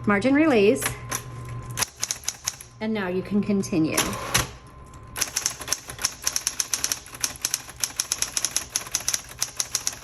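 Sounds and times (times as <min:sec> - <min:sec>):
typewriter motor hum: 0:01.8 - 0:02.7, 0:04.0 - 0:04.6, 0:05.2 - 0:10.0
typewriter key strikes: 0:05.2 - 0:10.0.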